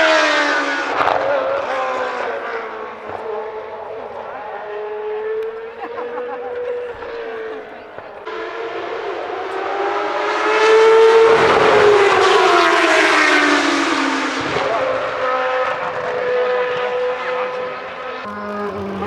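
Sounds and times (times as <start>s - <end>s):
racing car passing at high revs: 0.0s - 19.0s.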